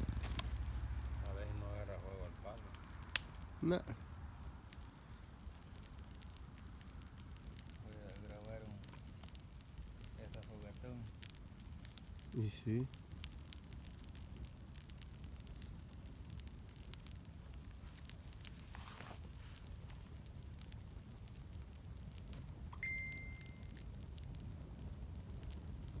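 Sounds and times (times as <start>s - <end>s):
campfire crackling: 0.0s - 26.0s
brief high tone: 22.8s - 23.7s.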